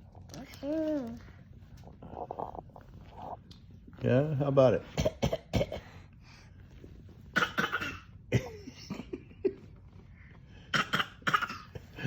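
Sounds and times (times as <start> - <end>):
pretend coughs: 4.9 - 6.0, 7.3 - 9.2, 10.7 - 12.0.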